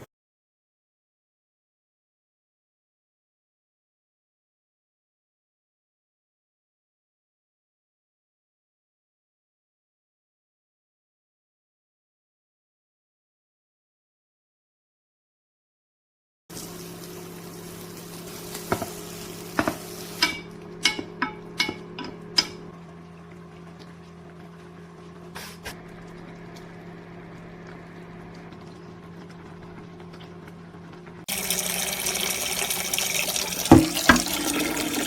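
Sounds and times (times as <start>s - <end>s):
tap water running: 16.5s - 22.6s, 25.8s - 35.0s
cookware clinking: 19.6s - 22.7s, 33.6s - 35.0s.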